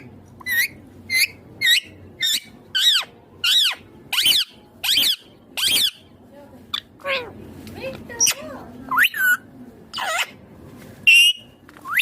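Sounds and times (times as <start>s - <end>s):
parrot screeching: 0.0s - 6.1s, 8.2s - 10.4s.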